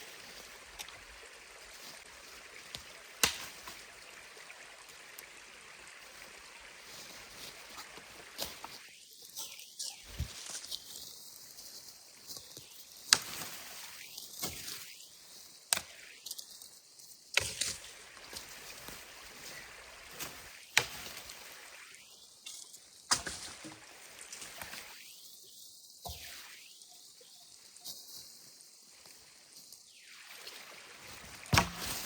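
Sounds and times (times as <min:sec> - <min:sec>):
faint steady hiss: 0:00.0 - 0:32.0.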